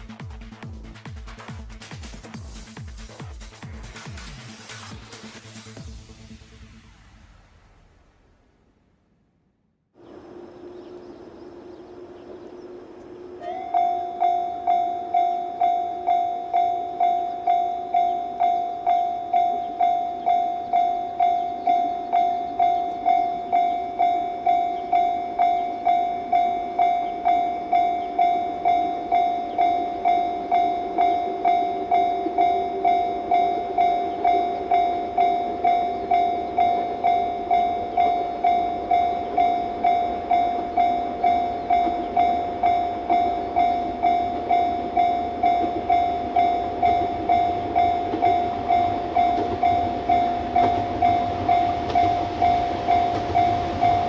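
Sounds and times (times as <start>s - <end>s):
train rumble: 10.0s - 54.0s
level crossing bell dinging: 13.4s - 54.0s.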